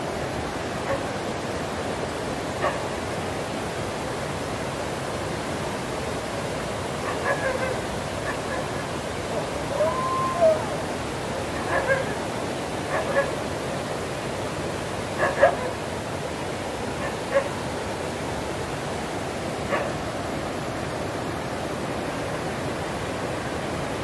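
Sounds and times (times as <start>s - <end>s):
dog barking and yipping: 7.0s - 8.8s, 11.6s - 12.2s, 12.9s - 13.3s, 15.2s - 15.8s, 19.7s - 20.0s
dog whining: 9.7s - 10.8s.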